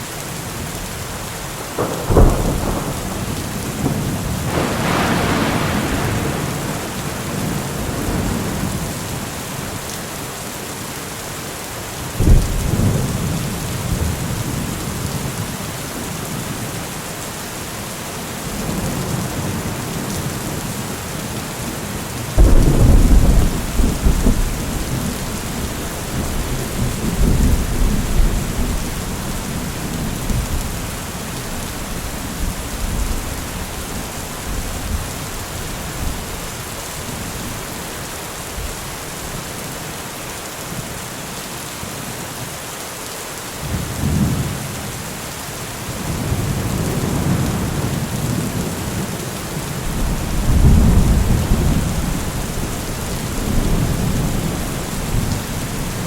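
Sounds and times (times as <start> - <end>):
heavy rain: 0.0 - 56.0
rolling thunder: 1.7 - 9.2, 12.2 - 15.4, 22.3 - 36.4, 49.8 - 56.0.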